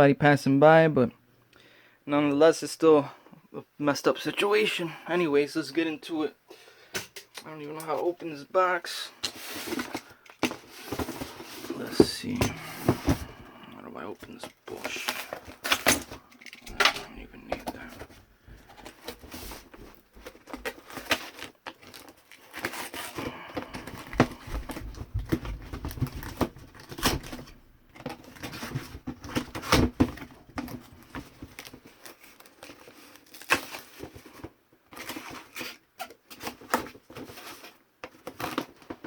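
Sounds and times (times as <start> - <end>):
knocks and scrapes: 9.2 - 13.6
packaging rustling and crinkling: 9.2 - 39.0
cardboard tearing: 31.4 - 34.1.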